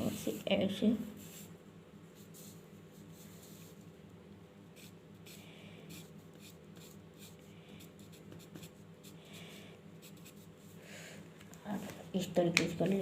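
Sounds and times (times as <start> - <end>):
low electrical hum: 0.0 - 13.0
pencil scratching on paper: 1.1 - 1.5, 4.8 - 9.4, 10.0 - 10.5.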